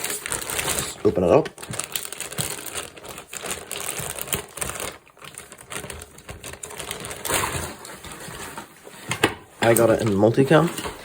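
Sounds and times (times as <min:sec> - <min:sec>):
packaging and fabric rustling: 0:00.0 - 0:11.0
clicks and scrapes: 0:07.0 - 0:11.0.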